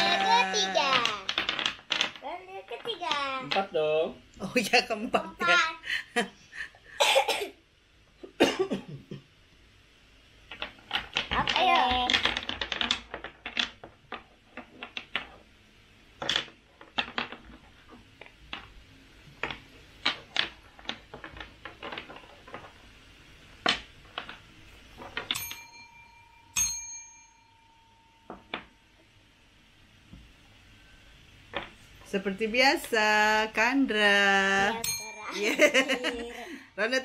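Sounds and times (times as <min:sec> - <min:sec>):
playing cards and game pieces clicking: 0:00.0 - 0:03.8, 0:10.4 - 0:15.5, 0:16.2 - 0:22.9, 0:23.6 - 0:25.4.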